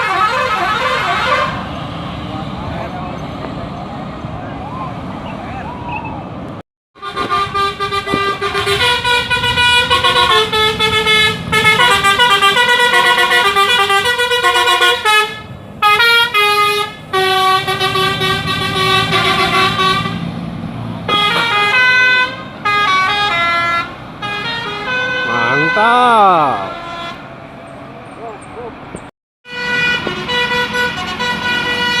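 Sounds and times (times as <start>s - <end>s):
musical bus air horn: 0.0s - 1.7s, 7.0s - 20.3s, 21.1s - 27.3s, 29.4s - 32.0s.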